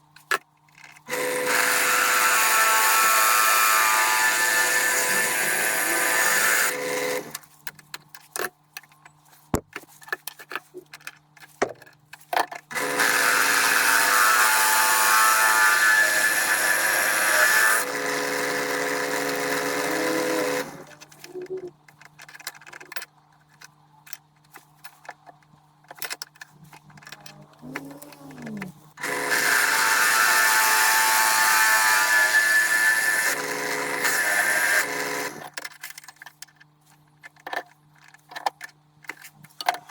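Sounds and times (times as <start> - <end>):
power tool motor running: 1.1 - 7.4, 12.7 - 20.9, 27.6 - 35.5.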